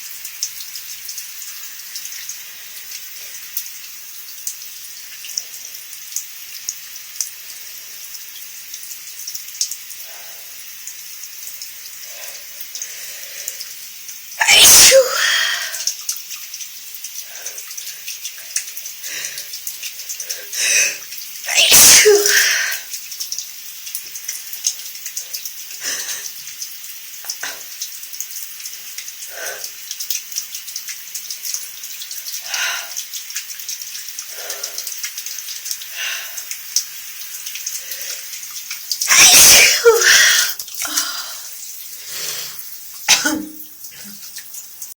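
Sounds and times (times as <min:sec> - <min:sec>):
person sneezing: 0:14.4 - 0:15.8, 0:20.6 - 0:22.8, 0:39.1 - 0:41.4, 0:43.1 - 0:44.2
shower spray hissing: 0:14.4 - 0:15.9, 0:20.2 - 0:22.9, 0:39.1 - 0:44.2.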